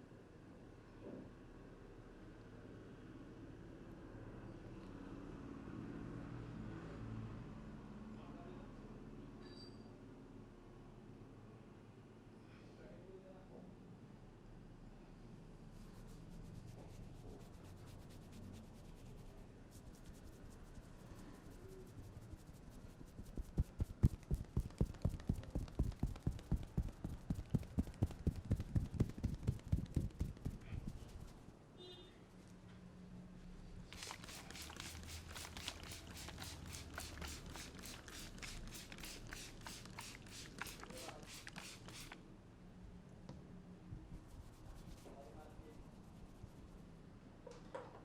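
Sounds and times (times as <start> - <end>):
hands rubbing scalp and hair: 15.8 - 31.5, 33.9 - 42.2, 44.2 - 46.8
dull pats on head: 21.9 - 31.4, 33.9 - 42.2.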